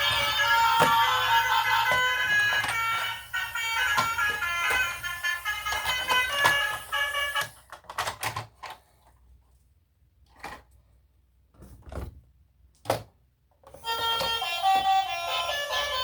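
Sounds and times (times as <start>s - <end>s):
background music: 0.0s - 7.4s.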